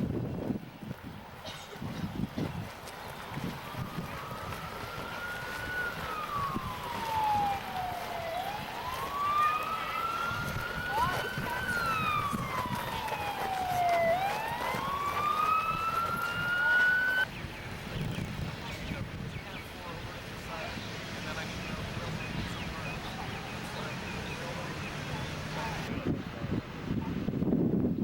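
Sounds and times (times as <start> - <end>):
emergency siren wailing: 3.2 - 17.3.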